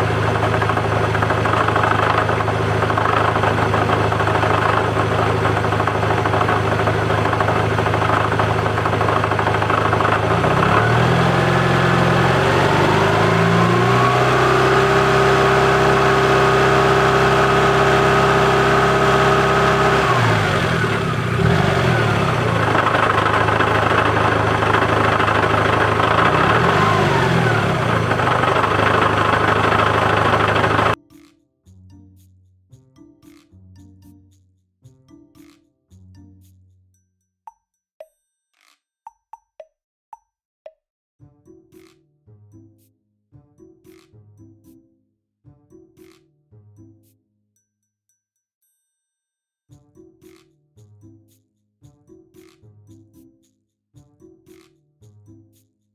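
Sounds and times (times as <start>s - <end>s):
car engine running: 0.0s - 31.0s.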